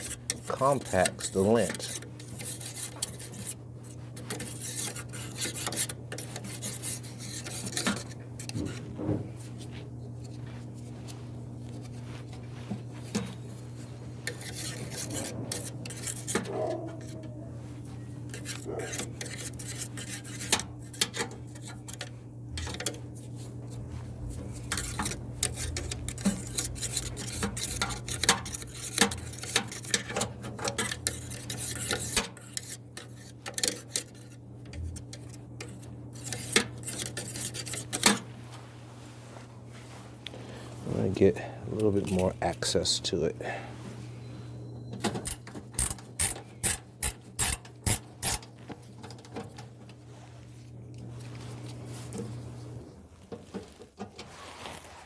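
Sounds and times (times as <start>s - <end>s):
metal tools scraping and clinking: 0.0s - 3.6s, 14.2s - 17.4s, 18.3s - 23.0s, 24.5s - 34.4s
steady low hum: 0.0s - 54.2s.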